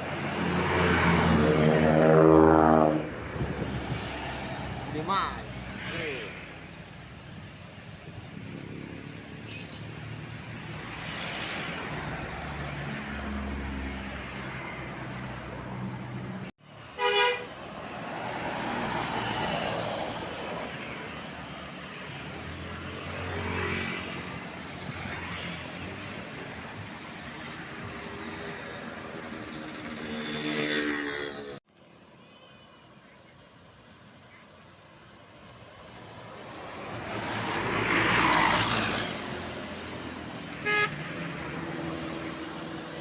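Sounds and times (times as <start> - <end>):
traffic with large vehicles passing: 0.0 - 43.0
bus horn blast: 17.0 - 17.6, 40.6 - 41.2.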